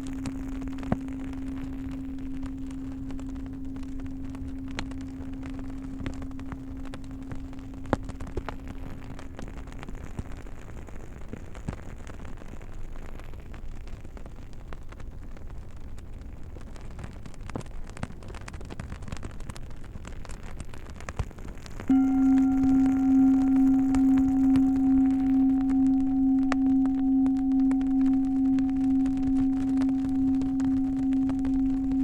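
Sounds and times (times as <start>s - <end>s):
singing bowl tone: 0.0s - 10.3s, 21.9s - 32.0s.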